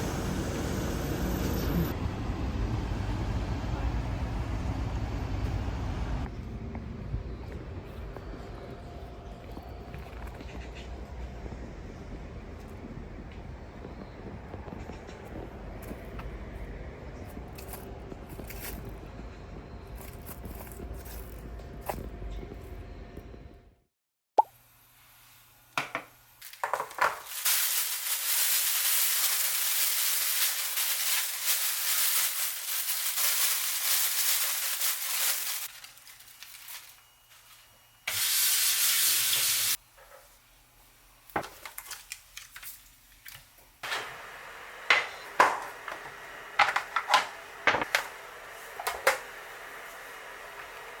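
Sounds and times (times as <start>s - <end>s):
food sizzling in a frying pan: 26.6s - 35.7s, 38.1s - 39.8s.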